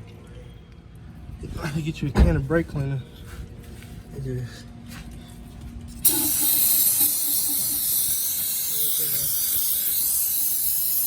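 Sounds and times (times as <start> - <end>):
aerosol can spraying hiss: 6.0 - 11.0.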